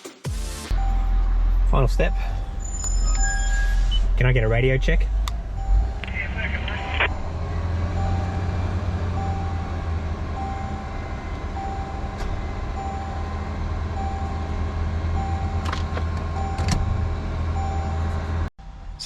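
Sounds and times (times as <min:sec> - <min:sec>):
reversing beeper beeps: 0:00.7 - 0:15.7, 0:16.4 - 0:18.2
vehicle engine idling: 0:00.7 - 0:18.8.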